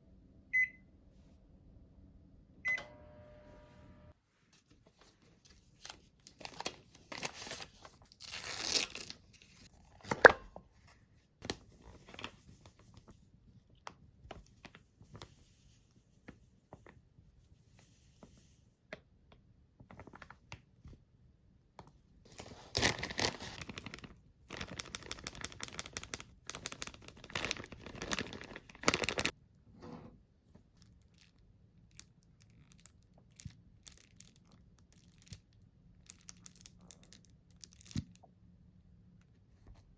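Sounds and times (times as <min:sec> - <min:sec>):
packaging crinkling and tearing: 0:05.7 - 0:10.3, 0:22.3 - 0:29.3.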